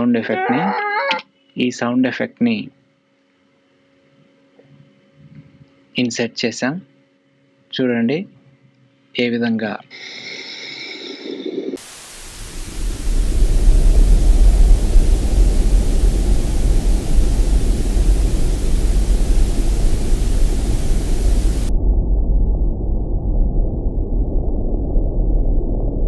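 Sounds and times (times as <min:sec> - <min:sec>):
tv static hiss: 0:11.8 - 0:21.7
deep low drone: 0:12.3 - 0:26.0.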